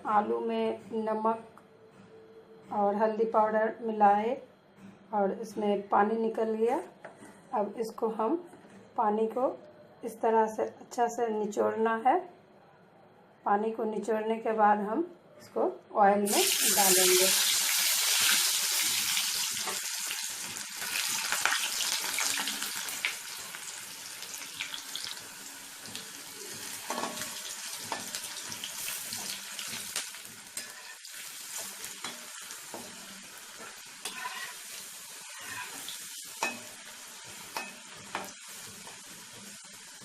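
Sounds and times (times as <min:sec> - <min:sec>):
potatoes sizzling in hot oil: 0:16.3 - 0:40.0.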